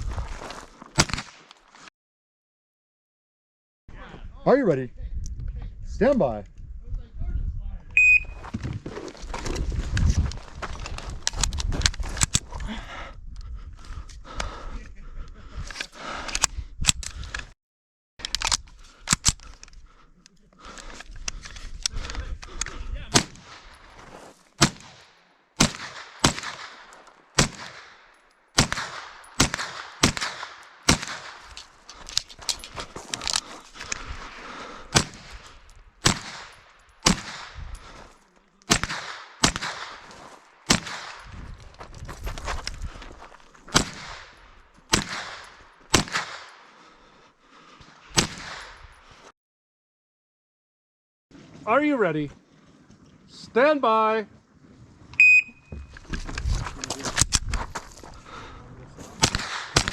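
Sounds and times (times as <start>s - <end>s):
rifle gunshots with echo: 24.6s - 31.5s, 34.9s - 35.4s, 36.0s - 37.6s, 38.7s - 41.3s, 43.7s - 46.6s, 48.2s - 48.8s, 59.2s - 59.9s.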